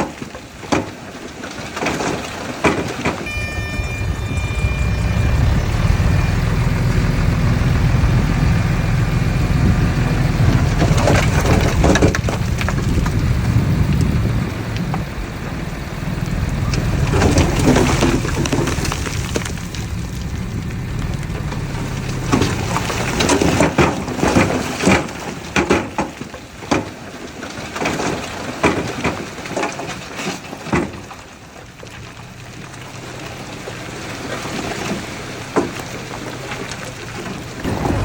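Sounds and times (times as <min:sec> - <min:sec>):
diesel engine droning: 0:03.3 - 0:24.8, 0:31.8 - 0:38.0.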